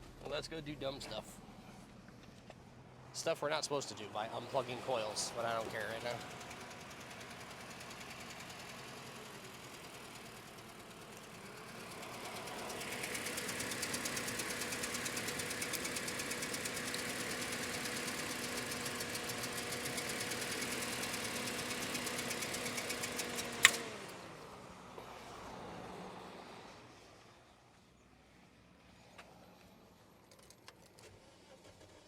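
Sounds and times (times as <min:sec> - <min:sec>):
car engine idling rough: 0:00.0 - 0:25.2
sharp snap: 0:23.6 - 0:23.9.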